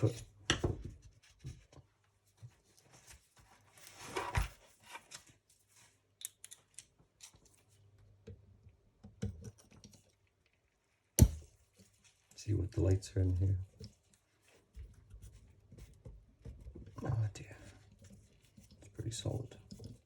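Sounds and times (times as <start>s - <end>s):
light clicks and taps of tools: 6.1s - 10.6s, 19.5s - 20.0s.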